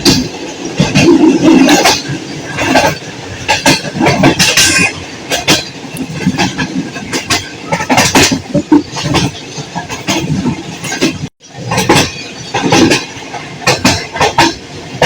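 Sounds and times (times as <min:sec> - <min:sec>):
train rumble: 0:00.0 - 0:15.0
train wheels clattering on rails: 0:00.0 - 0:15.0.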